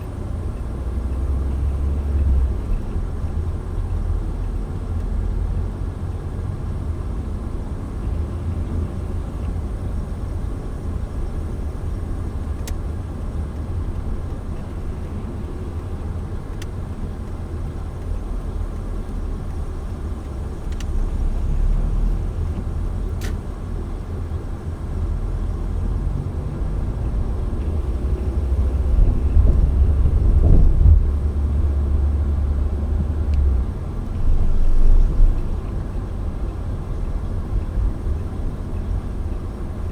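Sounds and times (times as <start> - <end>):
car road and engine rumble: 0.0 - 39.9
faint clicks: 20.2 - 21.0.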